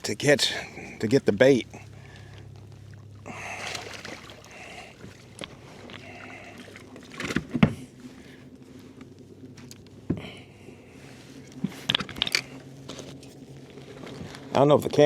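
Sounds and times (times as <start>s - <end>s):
knocks and clatters on kayak: 7.0s - 7.9s.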